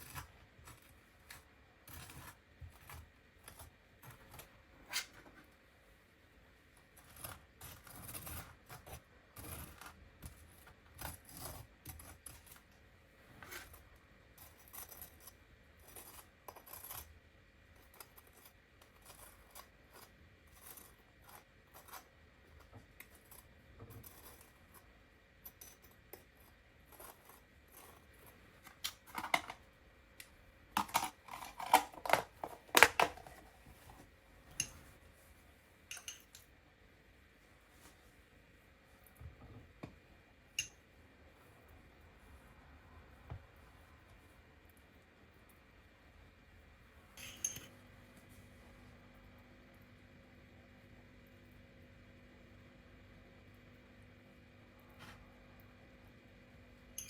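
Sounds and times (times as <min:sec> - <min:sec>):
dishes clinking: 0:35.9 - 0:36.4, 0:47.2 - 0:47.7.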